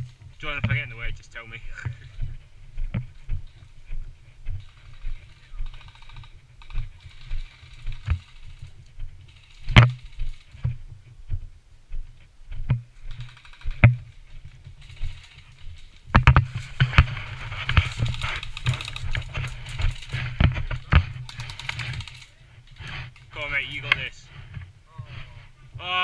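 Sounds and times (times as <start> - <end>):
airsoft guns firing automatic: 4.6 - 10.6, 13.1 - 14.1, 14.8 - 24.2
footsteps thudding: 16.1 - 21.2.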